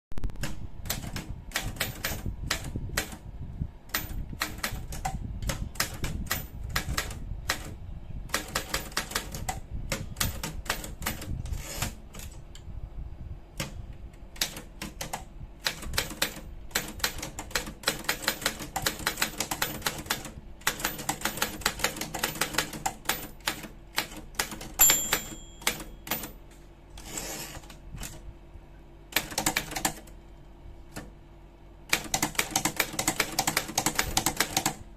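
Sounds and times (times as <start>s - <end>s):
typewriter key strikes: 3.9s - 7.6s, 8.3s - 12.4s, 14.4s - 26.4s, 31.9s - 34.8s
typewriter bell ding: 24.7s - 26.4s.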